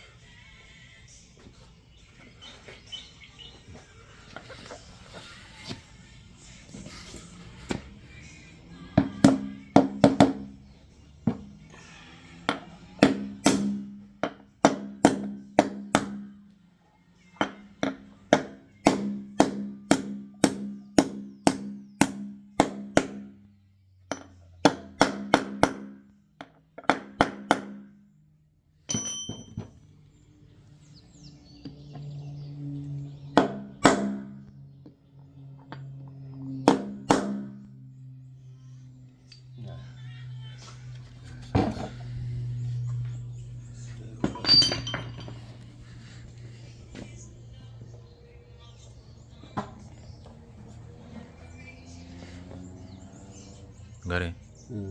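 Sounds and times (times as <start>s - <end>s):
hammer blows on metal: 11.3s - 16.4s.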